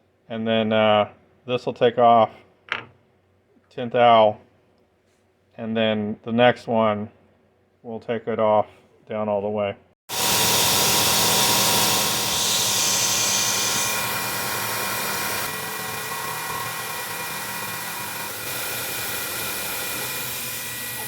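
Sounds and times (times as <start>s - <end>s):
milling machine whining: 10.1s - 21.0s.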